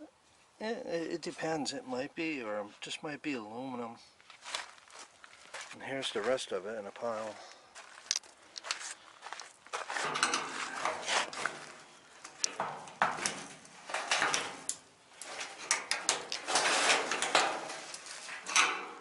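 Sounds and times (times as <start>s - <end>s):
metal parts clanking and scraping: 9.8s - 19.0s.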